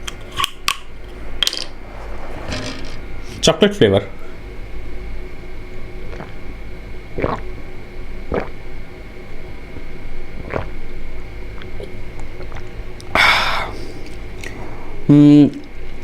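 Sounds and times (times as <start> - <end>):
person gulping a drink: 7.2 - 7.4.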